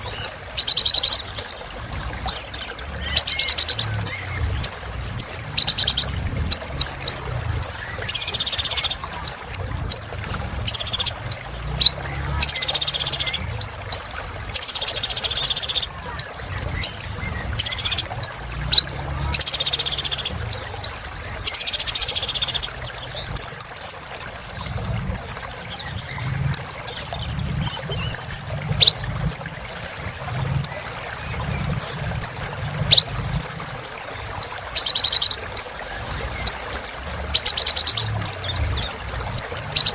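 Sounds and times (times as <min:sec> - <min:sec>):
sunbird singing high chirps and trills: 0:00.0 - 0:39.9.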